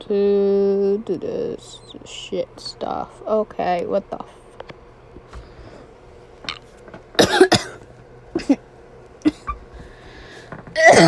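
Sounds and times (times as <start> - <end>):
person coughing: 7.2 - 7.8, 8.4 - 8.6, 10.8 - 11.0.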